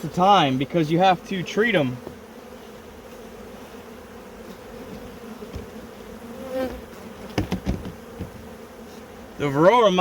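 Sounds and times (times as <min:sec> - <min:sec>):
honeybees buzzing: 0:00.0 - 0:10.0
sharp knocks: 0:07.3 - 0:08.4.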